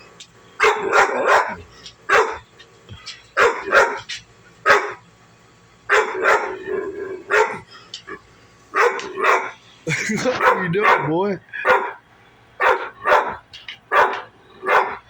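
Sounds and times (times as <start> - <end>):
dog barking: 0.6 - 2.5, 3.4 - 5.0, 5.9 - 6.7, 7.3 - 7.6, 8.8 - 9.6, 10.2 - 12.0, 12.6 - 15.0.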